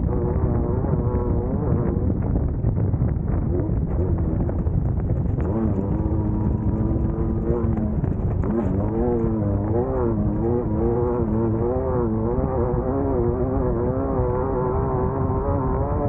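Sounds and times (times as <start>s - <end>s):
race car engine revving: 3.4s - 16.0s.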